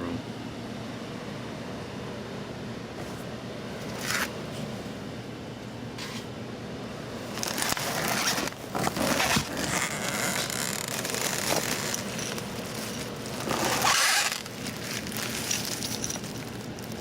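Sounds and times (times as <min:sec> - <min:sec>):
packing material rustling: 0:07.3 - 0:17.0
scraping: 0:07.3 - 0:17.0.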